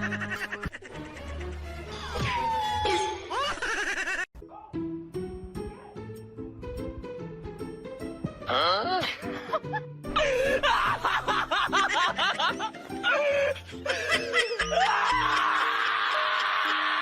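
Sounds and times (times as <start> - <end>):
high wavering laughter: 0.0 - 4.3, 10.4 - 15.6
background music: 0.0 - 17.0.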